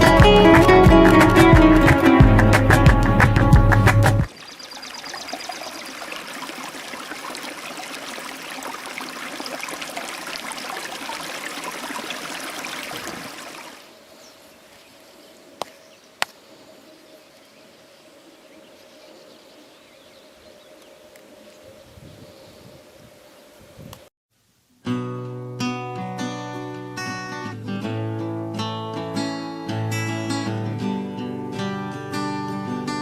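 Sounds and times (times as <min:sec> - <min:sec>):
waterfall rushing: 0:04.3 - 0:13.8.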